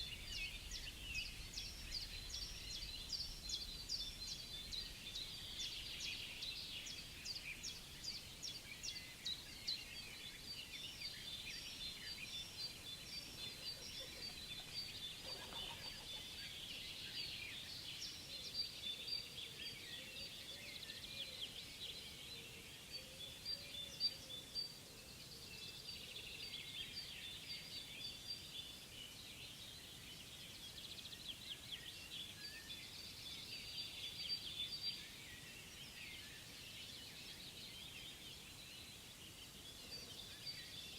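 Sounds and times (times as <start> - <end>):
songbirds chirping and trilling: 0.0 - 40.9.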